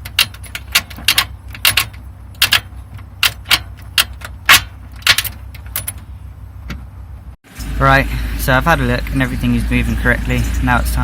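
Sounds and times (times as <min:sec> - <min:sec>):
gear shift linkage clicking: 0:00.0 - 0:06.9.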